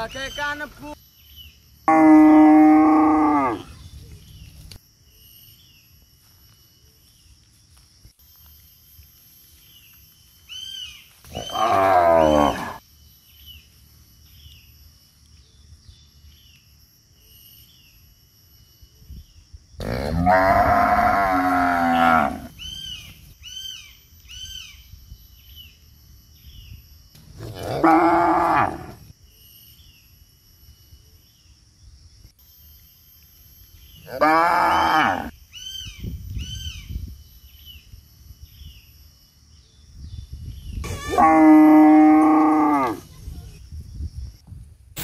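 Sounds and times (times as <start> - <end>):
cow mooing: 1.9 - 3.8, 11.4 - 12.8, 19.8 - 22.6, 27.4 - 29.0, 34.1 - 35.3, 40.8 - 43.0.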